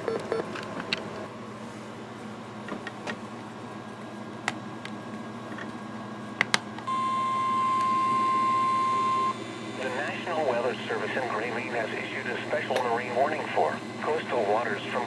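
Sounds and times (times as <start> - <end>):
weather radio alert tone: 6.9 - 15.0.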